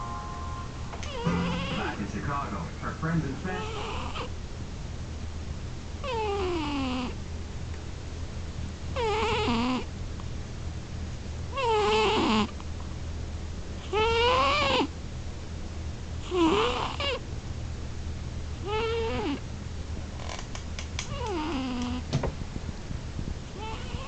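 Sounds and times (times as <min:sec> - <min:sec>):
cat snoring with meow-like calls: 0:01.1 - 0:01.9, 0:03.6 - 0:04.3, 0:06.0 - 0:07.2, 0:09.0 - 0:09.9, 0:11.5 - 0:12.6, 0:13.8 - 0:14.9, 0:16.2 - 0:17.2, 0:18.6 - 0:19.4, 0:21.1 - 0:22.1, 0:23.6 - 0:24.0.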